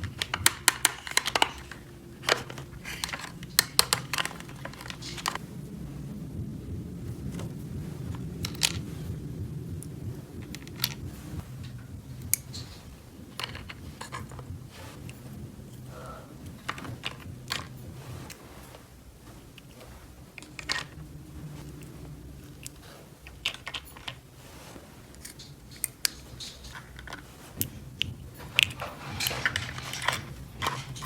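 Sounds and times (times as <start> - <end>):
plastic toy pieces clicking: 0.0 - 5.4
low steady hum: 0.0 - 31.0.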